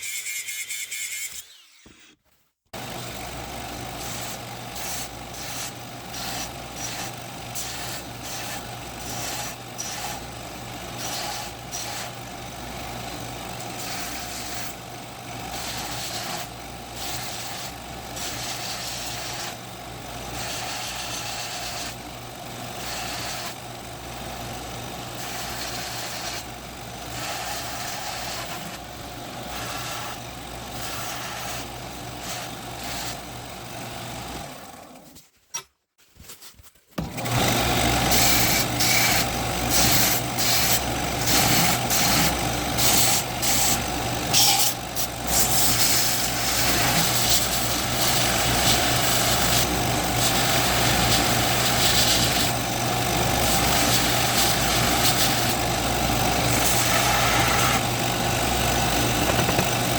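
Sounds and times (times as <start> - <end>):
machine hum: 37.0 - 59.9.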